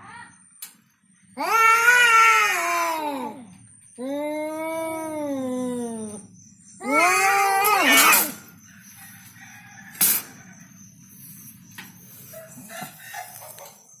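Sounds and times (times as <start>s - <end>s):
cat caterwauling: 1.3s - 8.6s.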